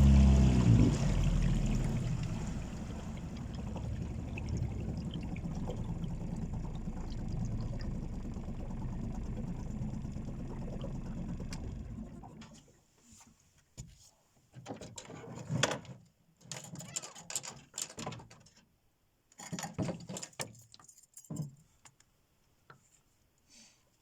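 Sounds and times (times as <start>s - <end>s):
water splashing against boat hull: 0.0s - 12.6s.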